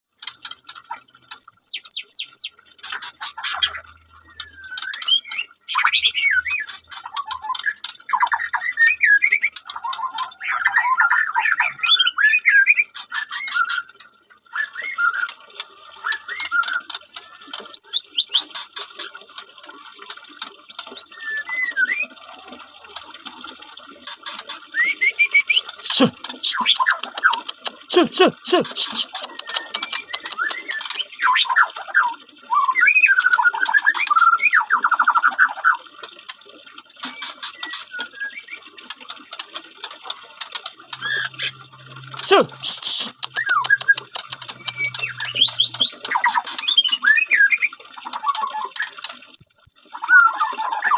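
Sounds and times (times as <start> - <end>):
bird clicking and rattling notes: 0.2 - 8.9, 15.1 - 21.2, 22.9 - 24.8, 25.5 - 27.9, 29.0 - 31.7, 36.0 - 42.2, 43.0 - 47.2
bird singing whistled phrases: 4.2 - 6.7, 14.5 - 15.4, 16.0 - 18.5, 21.0 - 22.1, 24.7 - 27.0, 28.9 - 34.8, 37.0 - 38.7, 41.0 - 50.9.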